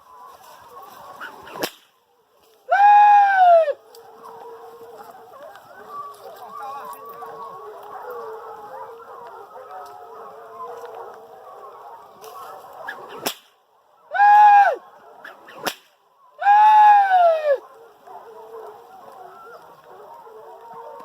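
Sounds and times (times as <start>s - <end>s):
pack of hounds baying: 0.0s - 2.7s, 3.7s - 16.4s, 17.2s - 21.0s
sharp cracks: 1.4s - 2.0s, 13.1s - 13.6s, 15.3s - 16.0s.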